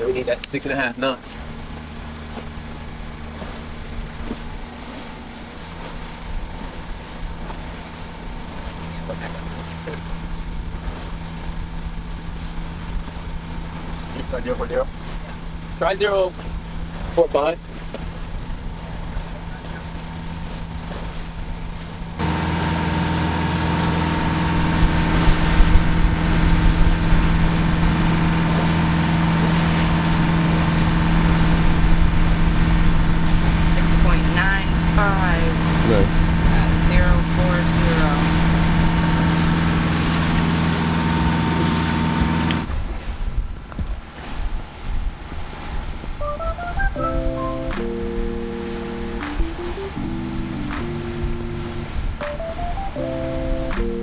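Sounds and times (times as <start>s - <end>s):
water noise: 0.0s - 54.0s
wind: 0.0s - 54.0s
diesel engine droning: 22.2s - 42.8s, 45.5s - 54.0s.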